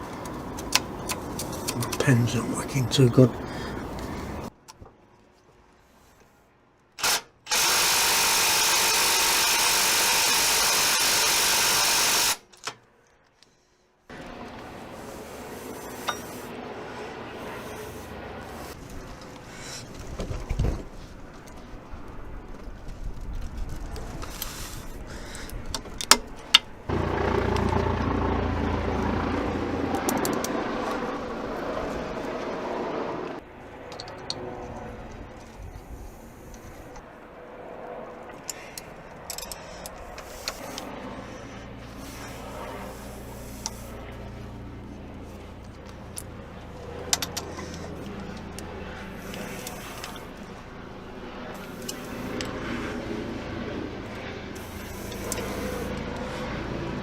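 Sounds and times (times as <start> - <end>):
power tool running: 7.0 - 12.5, 26.9 - 30.2
diesel engine running: 26.9 - 33.4.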